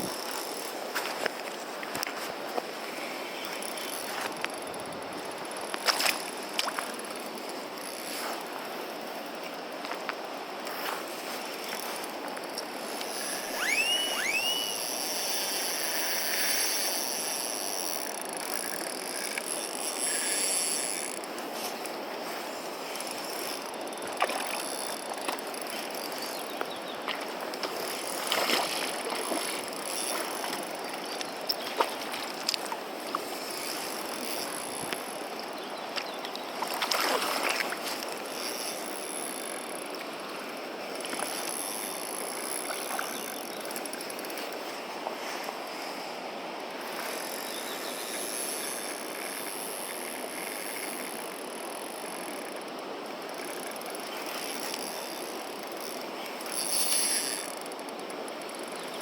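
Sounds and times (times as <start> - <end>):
stream flowing water: 0.0 - 59.0
quick rising whistles: 13.4 - 14.9.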